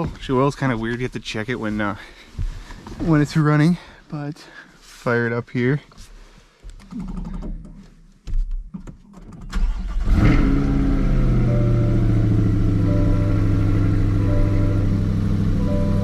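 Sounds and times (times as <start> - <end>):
car engine starting and idling: 9.2 - 16.0.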